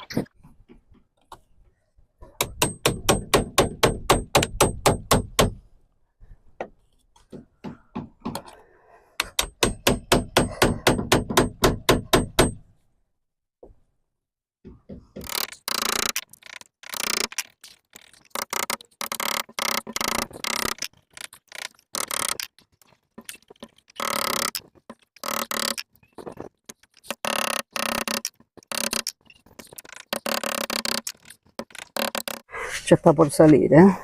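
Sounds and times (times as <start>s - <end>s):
scraping and prying window pane: 14.6s - 32.5s.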